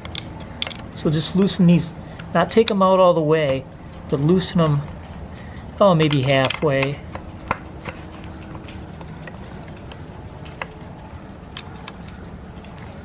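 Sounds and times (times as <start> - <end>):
low background hum: 0.0 - 13.0
metal clicks and taps of tool: 6.0 - 12.2.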